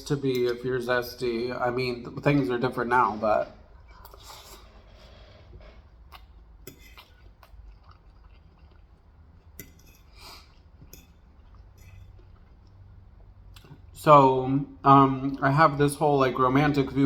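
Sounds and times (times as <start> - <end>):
chewing fried chicken: 3.9 - 13.9.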